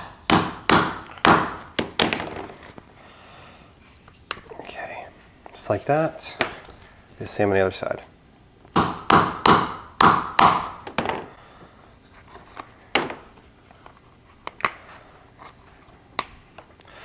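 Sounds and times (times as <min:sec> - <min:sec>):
hammer striking hole punch: 0:00.0 - 0:02.2, 0:08.7 - 0:11.2.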